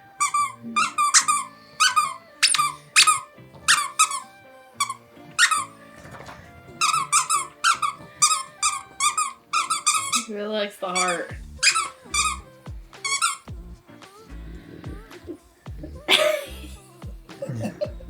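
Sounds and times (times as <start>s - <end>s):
background music: 0.0s - 18.0s
squeaky dog toy squeaks: 0.2s - 5.8s, 6.8s - 13.5s.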